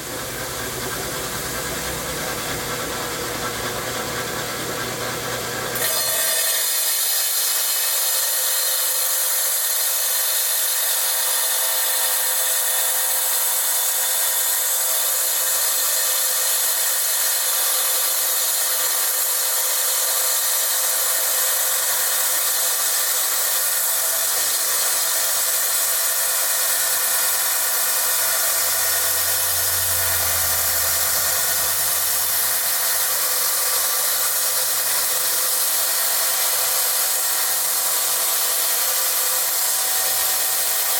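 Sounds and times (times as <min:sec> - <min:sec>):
tile saw cutting rock: 0:00.0 - 0:40.9.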